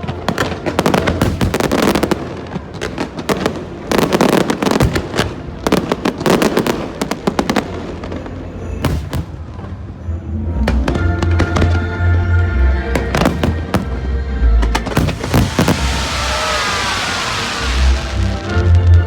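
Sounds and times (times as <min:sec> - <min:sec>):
fireworks crackling bangs: 0:00.0 - 0:09.7, 0:13.0 - 0:19.0.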